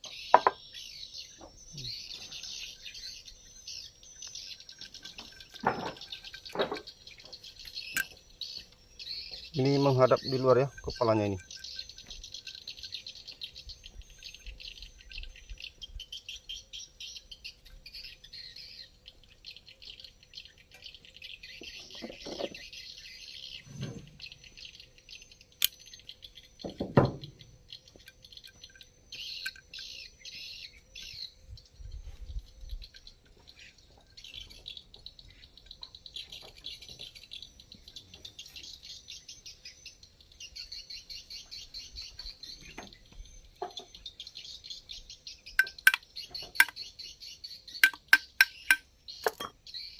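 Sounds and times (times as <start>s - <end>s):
birds chirping: 0.0s - 49.9s
knocks and clicks of tools: 0.4s - 0.6s, 45.6s - 46.0s, 46.6s - 46.8s, 47.8s - 49.6s.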